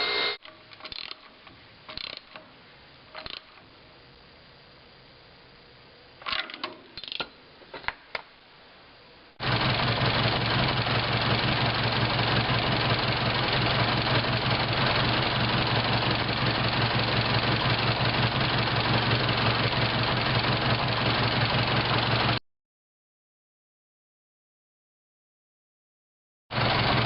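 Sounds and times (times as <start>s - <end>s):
car engine idling: 9.4s - 22.4s, 26.6s - 27.0s.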